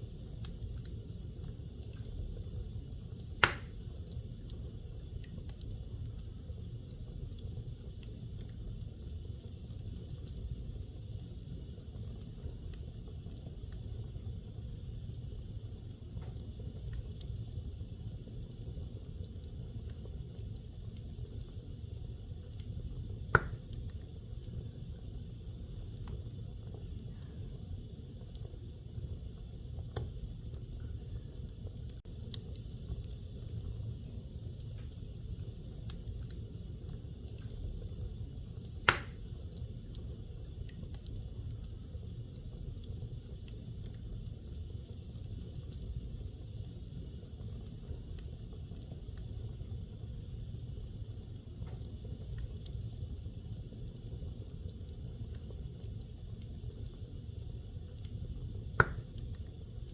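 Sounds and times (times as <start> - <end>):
fire rumbling and crackling: 0.0 - 59.9
sharp wood pop: 3.4 - 3.8, 23.4 - 23.6, 38.9 - 39.2, 58.8 - 59.0.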